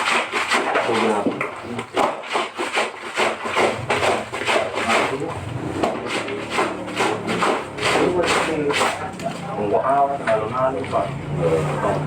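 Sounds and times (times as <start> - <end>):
cloth scrubbed by hand: 0.0 - 9.1.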